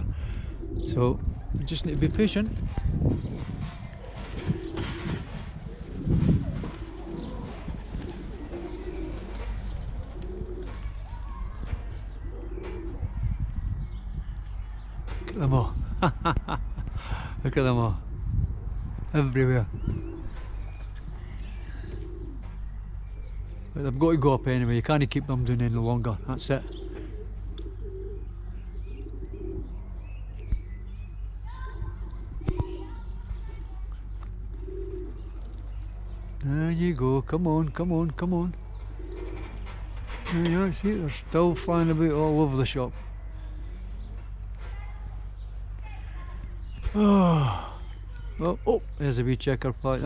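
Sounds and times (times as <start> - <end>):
pigeons cooing: 0.0 - 50.0
small bird chirping: 7.1 - 9.8, 25.1 - 50.0.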